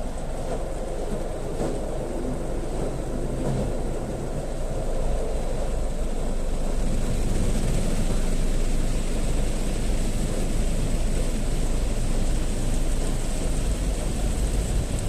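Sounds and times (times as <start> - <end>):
car wash machinery rumble: 0.0 - 15.0
water spraying: 6.8 - 15.0.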